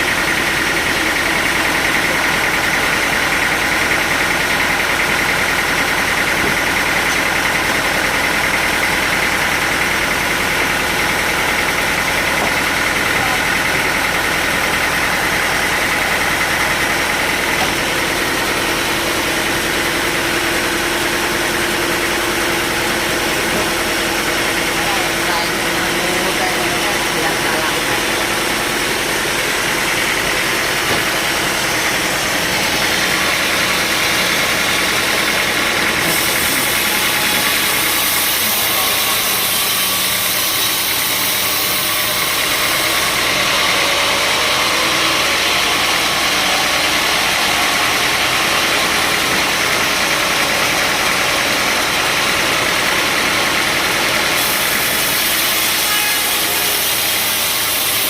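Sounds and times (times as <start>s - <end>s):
sawmill machinery running: 0.0s - 58.0s.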